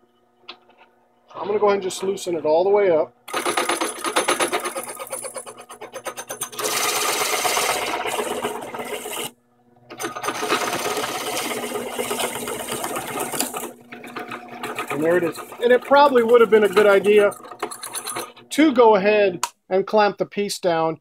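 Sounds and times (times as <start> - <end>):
drill press boring wood: 3.3 - 18.5.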